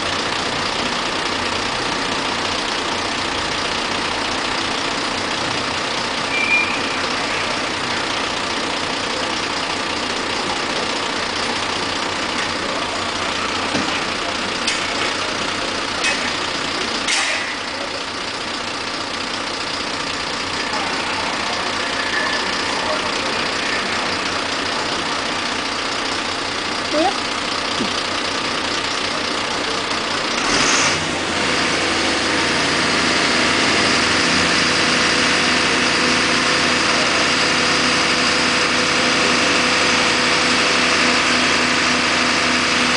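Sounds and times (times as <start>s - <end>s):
truck engine idling: 0.0s - 42.9s.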